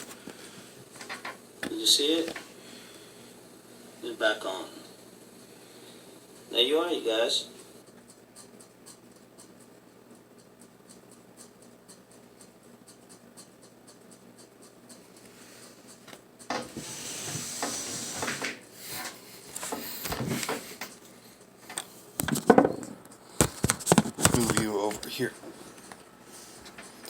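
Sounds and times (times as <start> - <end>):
small ticks: 7.8 - 16.5
rubbing and rustling: 15.4 - 21.3.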